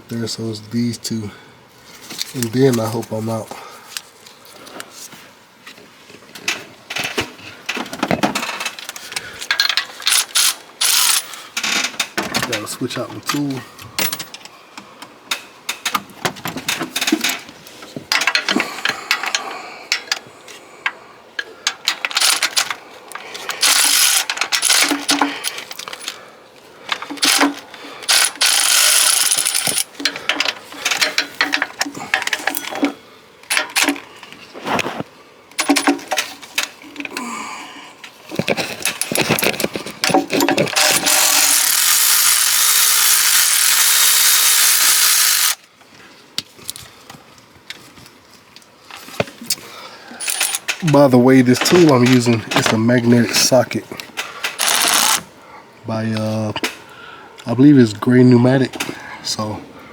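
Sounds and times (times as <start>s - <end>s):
power tool running: 10.8s - 11.2s, 23.6s - 25.2s, 27.1s - 29.9s, 40.7s - 45.6s, 54.6s - 55.2s
metallic clinks of socket and bolts: 50.2s - 50.9s.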